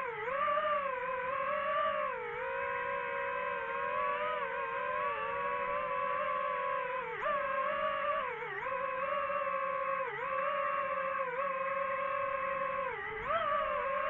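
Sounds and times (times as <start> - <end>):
drone propellers whining: 0.0 - 14.0.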